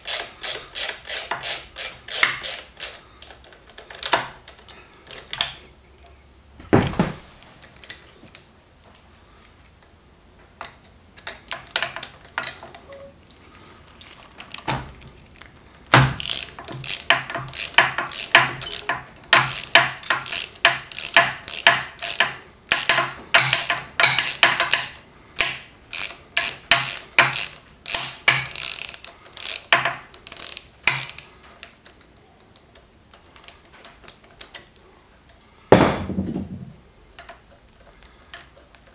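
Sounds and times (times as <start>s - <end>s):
ratchet wrench clicking: 0.0s - 4.2s, 16.0s - 31.3s.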